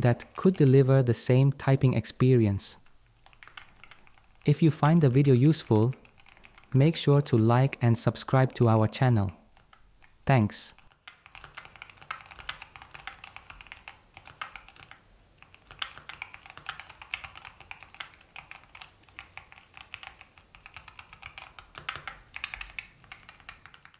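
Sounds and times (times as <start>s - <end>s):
keyboard key clicks: 11.1s - 23.9s.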